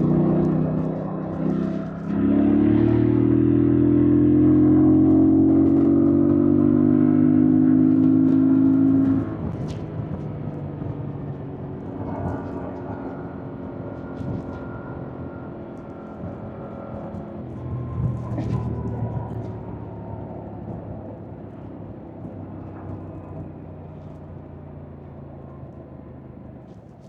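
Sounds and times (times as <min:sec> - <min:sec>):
motorcycle engine pulling under throttle: 0:00.0 - 0:27.0
road noise: 0:00.0 - 0:27.0
wind noise: 0:07.9 - 0:23.5.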